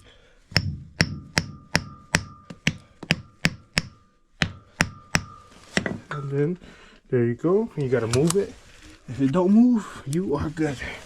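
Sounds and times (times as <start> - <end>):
hammer striking metal: 0.5 - 6.4.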